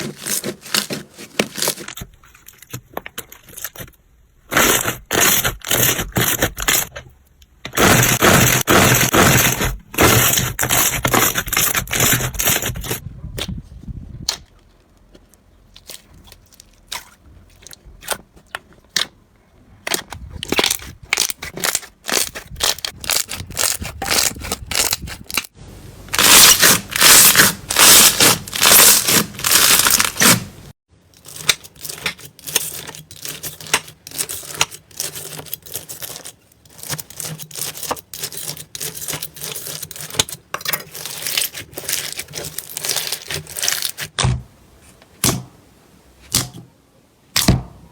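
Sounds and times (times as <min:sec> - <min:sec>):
slime crackling and popping: 0:26.1 - 0:30.4.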